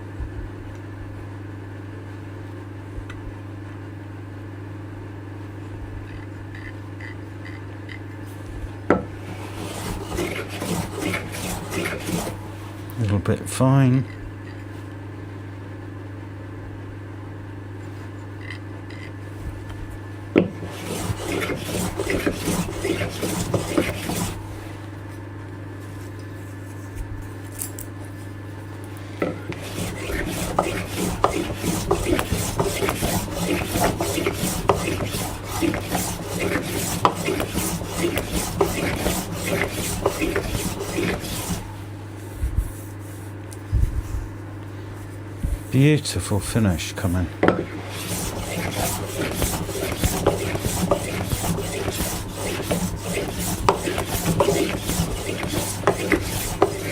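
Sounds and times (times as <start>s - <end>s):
steady low hum: 4.9s - 56.9s
block plane shaving wood: 9.2s - 12.5s, 20.4s - 24.6s, 29.4s - 41.9s, 47.6s - 56.9s.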